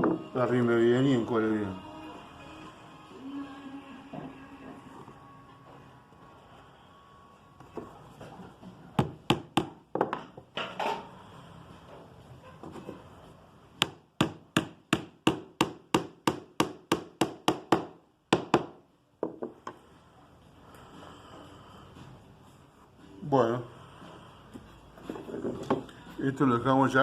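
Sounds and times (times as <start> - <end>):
hammer tapping on wood: 9.0 - 10.3, 13.8 - 19.6.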